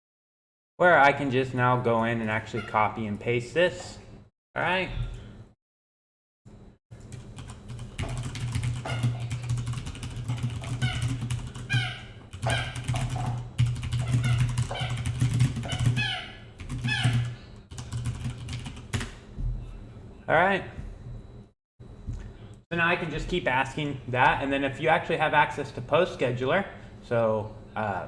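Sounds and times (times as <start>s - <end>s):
steady low hum: 6.5s - 28.0s
keyboard typing clicks: 12.3s - 16.0s.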